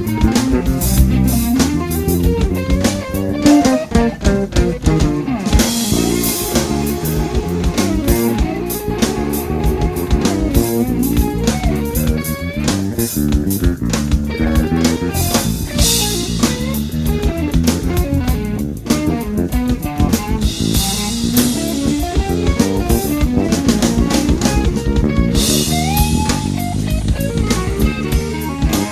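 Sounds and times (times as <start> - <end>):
drum kit: 0.0 - 28.9
electric bass runs: 0.0 - 28.9
cymbal washes: 3.4 - 12.2.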